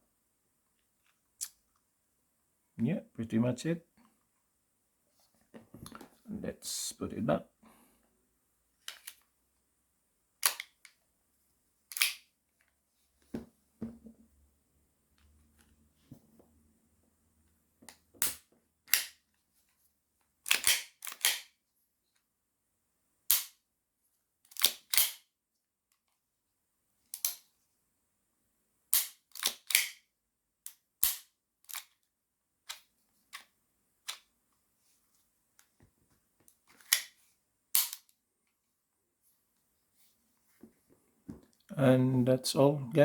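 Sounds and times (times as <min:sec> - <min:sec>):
metal clicks of pistol assembly: 0:10.4 - 0:11.0, 0:11.9 - 0:12.2, 0:20.4 - 0:21.5, 0:24.5 - 0:25.2, 0:27.1 - 0:27.5, 0:29.0 - 0:30.0, 0:30.7 - 0:32.0, 0:36.8 - 0:37.2, 0:37.8 - 0:38.1.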